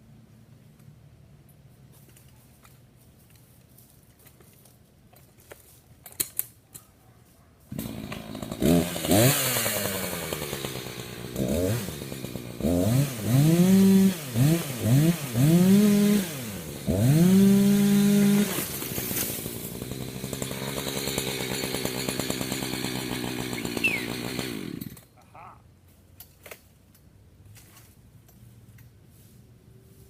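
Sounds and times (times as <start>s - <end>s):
chainsaw engine revving: 7.7s - 25.1s.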